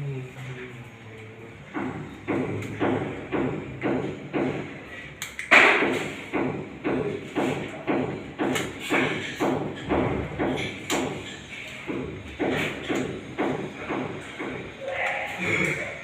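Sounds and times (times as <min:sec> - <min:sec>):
sharp knock: 0:05.5 - 0:11.1.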